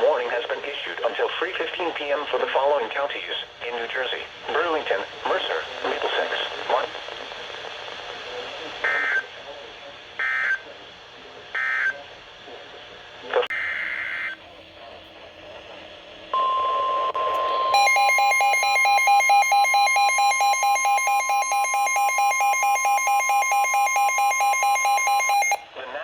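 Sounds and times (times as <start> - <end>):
rapidly pulsing beeping alarm: 10.2 - 10.6, 11.6 - 12.0, 16.4 - 25.7.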